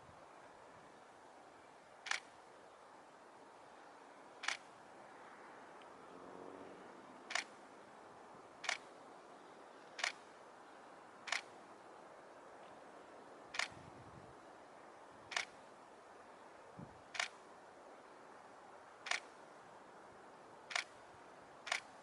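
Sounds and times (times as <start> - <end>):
faint background hiss: 0.0 - 22.0
camera shutter clicking: 2.1 - 2.3, 4.4 - 4.6, 7.3 - 7.5, 8.6 - 8.9, 10.0 - 10.2, 11.3 - 11.5, 13.6 - 13.8, 15.3 - 15.6, 17.2 - 17.4, 19.1 - 19.3, 20.7 - 21.0, 21.7 - 21.9.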